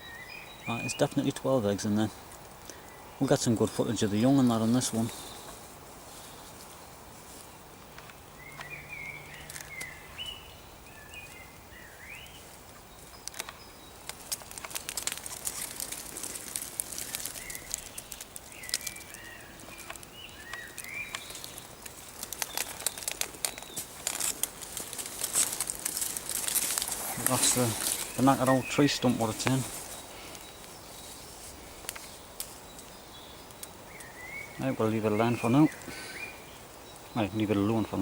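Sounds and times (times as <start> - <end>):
leaves and twigs crackling: 0.0 - 38.0
songbird warbling: 8.2 - 14.0, 15.4 - 25.2, 26.0 - 38.0.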